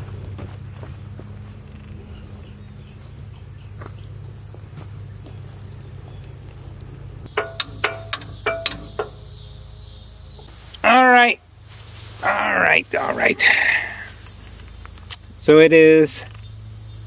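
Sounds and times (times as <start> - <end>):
crickets chirring: 0.0 - 17.0
sharp metallic clinks: 7.2 - 9.6.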